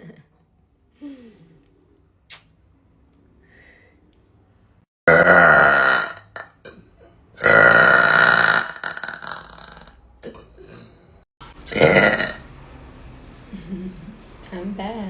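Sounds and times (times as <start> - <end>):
woman burping: 5.1 - 6.8, 7.4 - 11.0, 11.7 - 12.4.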